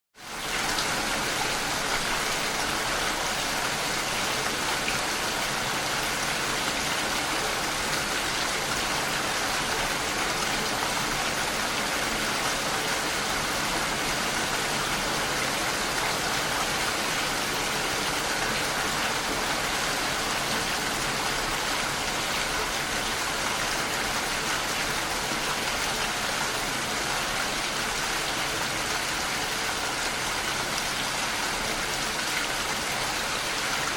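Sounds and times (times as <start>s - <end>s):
rain falling: 0.2s - 33.9s.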